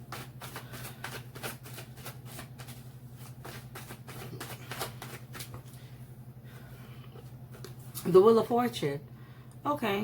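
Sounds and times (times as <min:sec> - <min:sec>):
cards being shuffled: 0:00.0 - 0:05.8
low electrical hum: 0:00.0 - 0:10.0.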